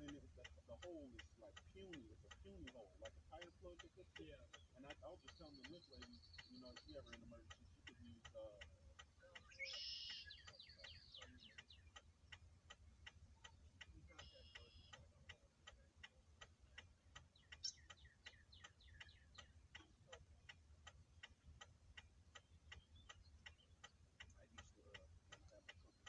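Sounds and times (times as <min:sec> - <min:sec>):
hazard-light flasher ticking: 0:00.0 - 0:26.0.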